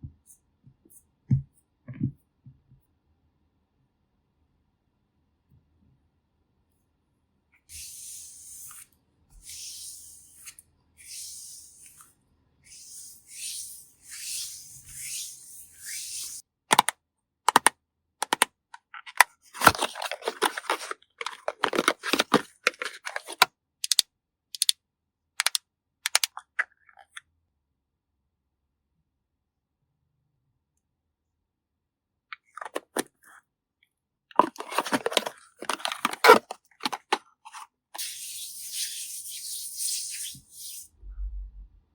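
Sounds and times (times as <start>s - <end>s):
clicks and taps of makeup items: 16.7s - 24.0s, 25.4s - 27.2s, 34.4s - 37.6s.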